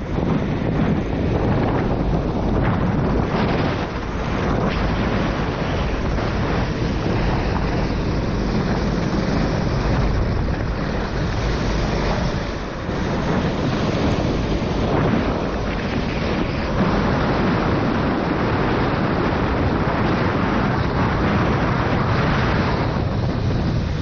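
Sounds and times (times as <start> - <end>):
kart engine: 0.0 - 24.0
wind buffeting microphone: 0.0 - 24.0
tyres hissing through water: 3.3 - 18.1.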